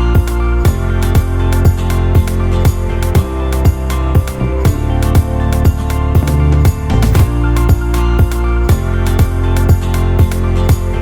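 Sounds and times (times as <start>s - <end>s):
background music with steady beat: 0.0s - 11.0s.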